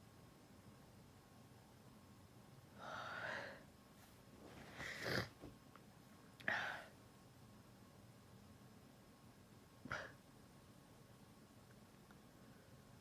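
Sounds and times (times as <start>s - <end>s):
noisy breath: 2.8s - 3.7s.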